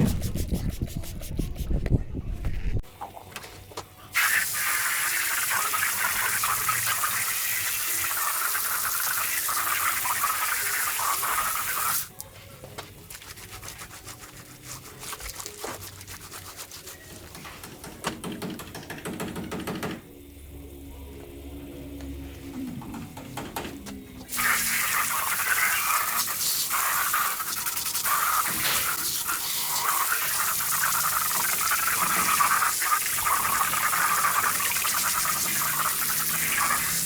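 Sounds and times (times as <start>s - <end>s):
handling and rubbing noises: 0.0s - 3.9s, 12.2s - 18.0s
spraying hiss: 24.3s - 37.0s.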